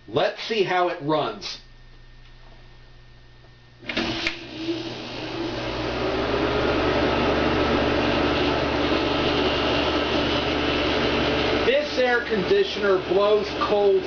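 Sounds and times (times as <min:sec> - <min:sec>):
air conditioner fan rushing: 0:03.8 - 0:14.0.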